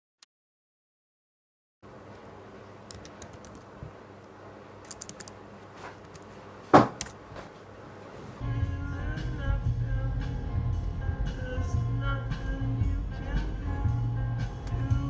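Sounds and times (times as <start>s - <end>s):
loud knock: 6.7s - 7.0s
music: 8.4s - 15.0s.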